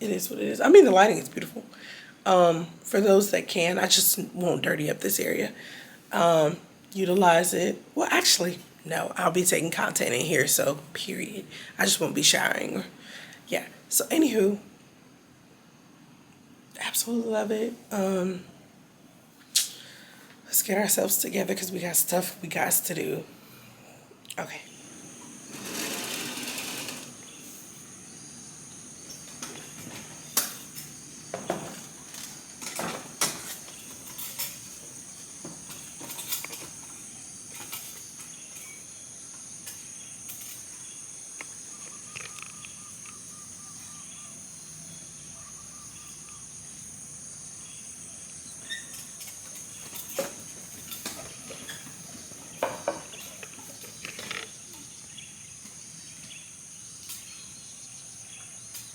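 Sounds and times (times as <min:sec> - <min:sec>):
insects droning: 0:00.0 - 0:58.9.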